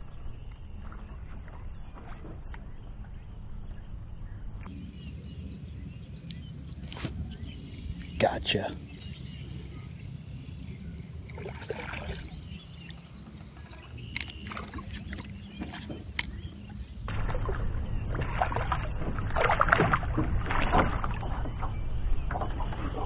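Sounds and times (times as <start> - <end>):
water sloshing around a boat: 4.7 - 21.6.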